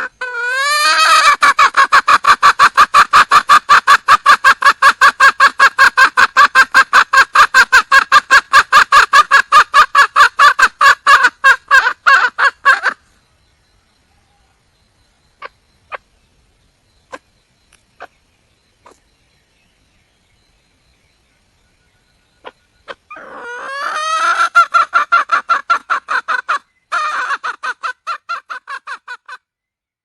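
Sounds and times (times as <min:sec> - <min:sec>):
hen clucking rapidly: 0:00.0 - 0:13.0, 0:22.4 - 0:29.4.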